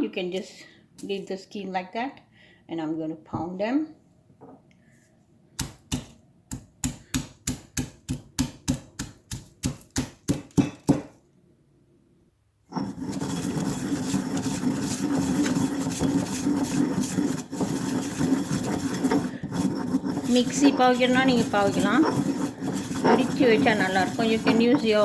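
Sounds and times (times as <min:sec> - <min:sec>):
pestle pounding in a mortar: 0:05.6 - 0:11.2, 0:12.8 - 0:25.0.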